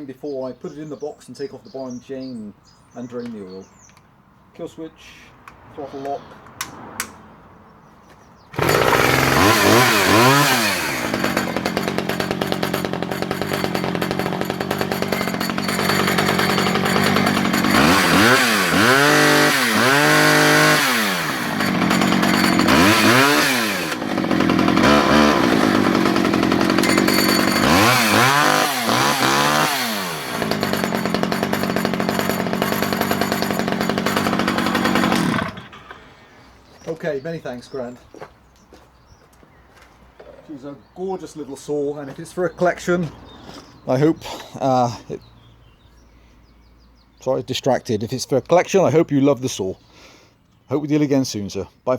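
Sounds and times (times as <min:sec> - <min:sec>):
chainsaw idling and revving: 0:08.5 - 0:36.2.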